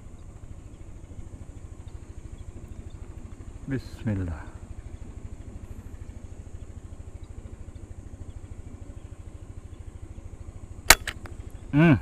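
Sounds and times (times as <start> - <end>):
low steady rumble: 0.0 - 12.0
air rifle shot: 10.9 - 11.3.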